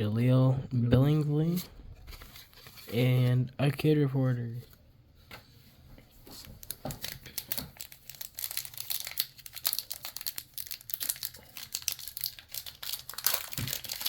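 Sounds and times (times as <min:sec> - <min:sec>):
foil wrapper crinkling: 0:06.4 - 0:14.0.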